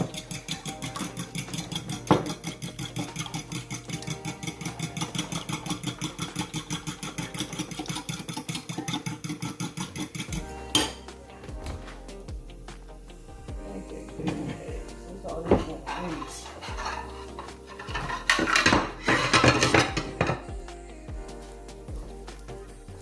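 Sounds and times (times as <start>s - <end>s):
whisk clinking in bowl: 0.0s - 11.0s, 17.7s - 20.4s.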